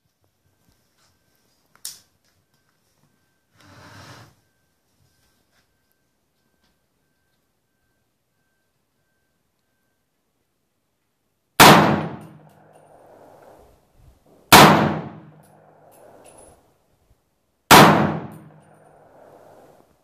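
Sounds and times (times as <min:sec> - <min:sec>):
rifle shots echoing: 0:11.6 - 0:13.6, 0:14.5 - 0:16.2, 0:17.7 - 0:19.7.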